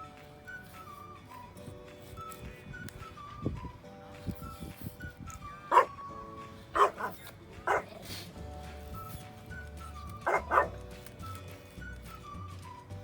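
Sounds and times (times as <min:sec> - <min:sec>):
background music: 0:00.0 - 0:13.0
dog barking: 0:05.7 - 0:06.0, 0:06.8 - 0:08.0, 0:10.2 - 0:10.8.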